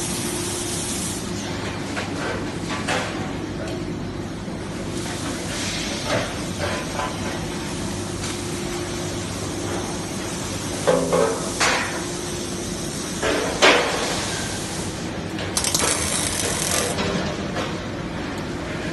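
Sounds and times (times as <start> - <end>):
factory machinery humming: 11.6 - 18.9.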